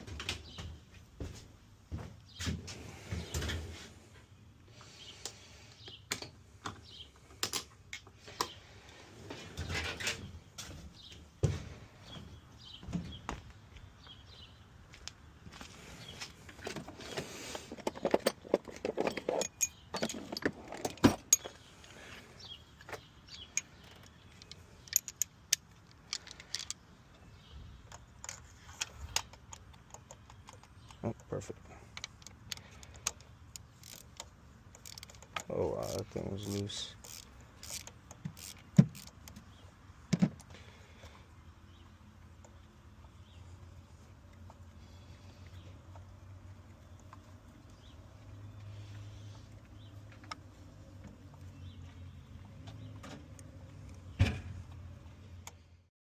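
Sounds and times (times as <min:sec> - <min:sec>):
metal hand tools clinking: 0:19.0 - 0:21.6
sharp clicks and knocks: 0:27.9 - 0:40.6.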